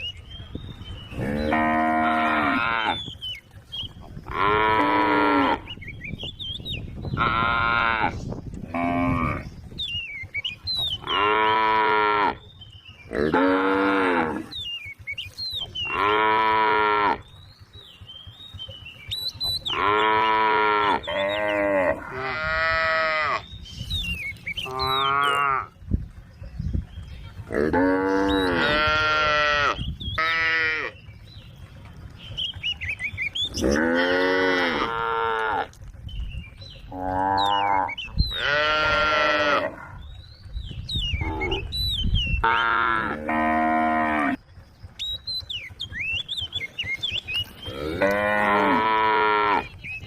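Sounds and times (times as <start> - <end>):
cattle mooing: 1.1 - 3.0, 4.3 - 5.7, 11.0 - 12.4, 13.1 - 14.5, 15.8 - 17.2, 19.6 - 23.5, 24.6 - 25.7, 27.5 - 31.0, 33.5 - 35.8, 36.9 - 40.0, 42.4 - 44.4, 47.6 - 49.8.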